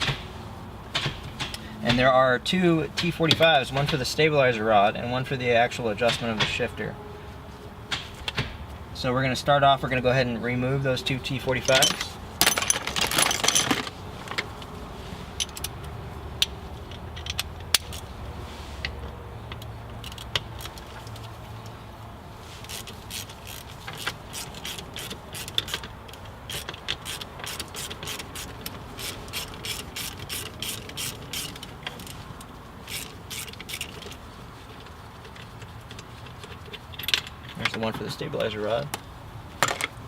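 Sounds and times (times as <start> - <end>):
ratchet pawl clicking: 22.6 - 32.2, 32.8 - 34.2.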